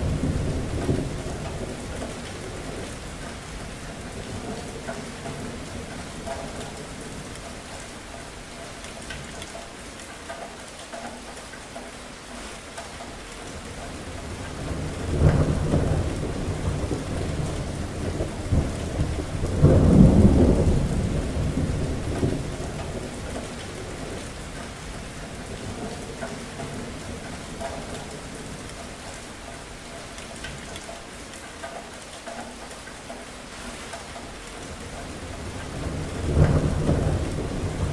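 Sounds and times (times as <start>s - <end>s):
thunder rumbling: 0.0s - 7.4s, 14.0s - 29.1s, 34.7s - 37.9s
steady rain: 0.0s - 37.9s.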